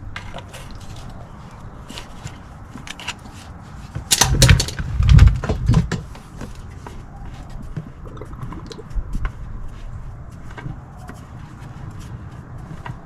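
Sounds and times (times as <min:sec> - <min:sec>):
clicks and knocks of hand tools: 0:04.0 - 0:06.1.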